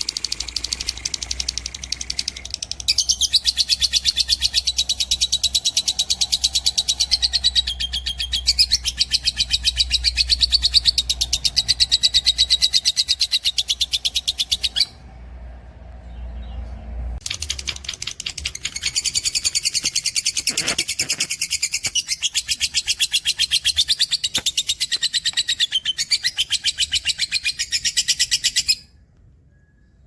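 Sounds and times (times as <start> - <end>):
bird singing fast trill: 0.0 - 15.0, 16.1 - 29.0.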